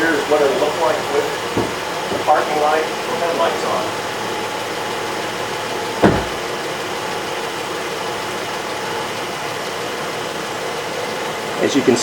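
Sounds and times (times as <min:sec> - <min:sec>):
car engine idling: 0:00.0 - 0:12.0
sharp knock: 0:06.0 - 0:06.5.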